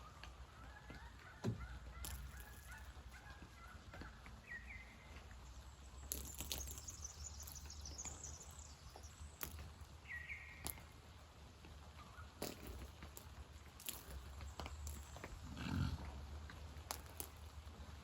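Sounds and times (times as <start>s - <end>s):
bird chirping: 0.9s - 10.9s.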